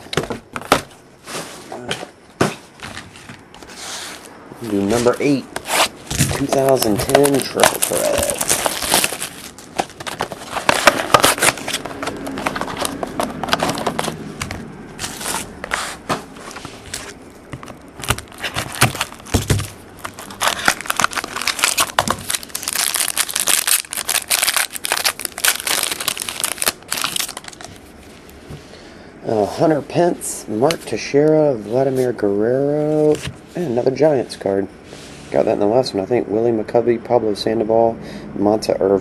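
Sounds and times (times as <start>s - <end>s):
wrapping crinkling and tearing: 4.8s - 15.9s, 16.9s - 28.3s.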